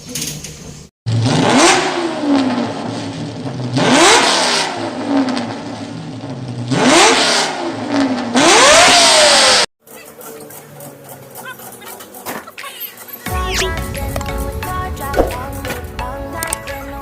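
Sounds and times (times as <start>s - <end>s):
car engine revving: 1.1s - 9.7s.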